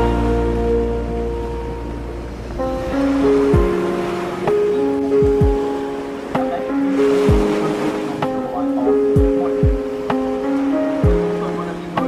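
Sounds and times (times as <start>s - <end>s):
background music with held notes: 0.0s - 12.0s
deep kick-drum beat: 3.6s - 3.8s, 5.2s - 5.6s, 7.3s - 7.5s, 9.2s - 9.9s, 11.0s - 11.3s.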